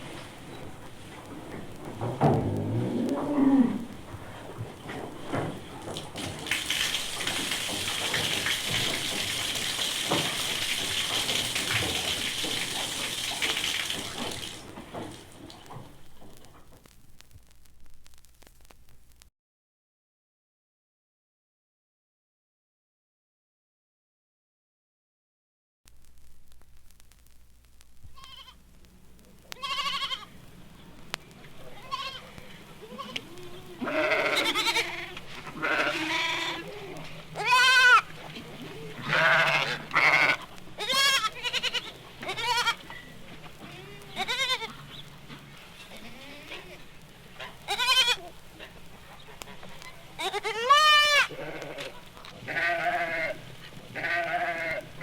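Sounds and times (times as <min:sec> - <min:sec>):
goats bleating: 0:02.3 - 0:04.3, 0:29.5 - 0:30.4, 0:31.6 - 0:45.1, 0:45.8 - 0:55.0
faint low hum: 0:25.9 - 0:55.0.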